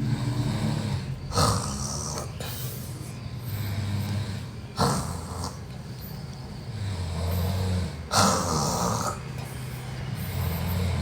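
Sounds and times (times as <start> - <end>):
person snoring: 3.5 - 5.6.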